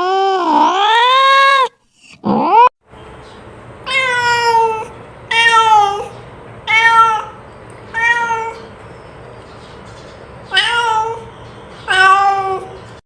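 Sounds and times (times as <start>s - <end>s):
cat meowing: 3.9s - 6.1s, 6.7s - 8.7s, 10.5s - 12.8s.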